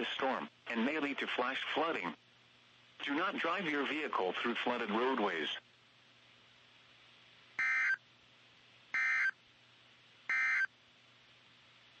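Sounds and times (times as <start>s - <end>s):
faint steady hum: 0.0s - 12.0s
buzzy digital data tones: 7.6s - 8.0s.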